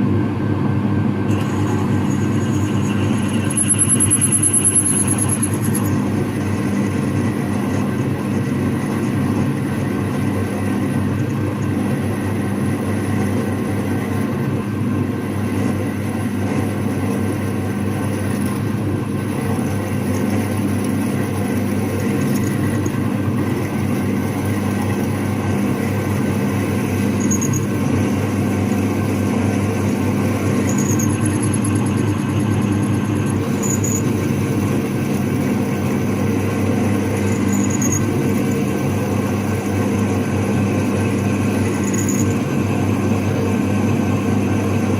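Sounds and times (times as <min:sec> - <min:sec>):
electric drilling machine humming: 0:01.3 - 0:08.4, 0:22.0 - 0:44.9.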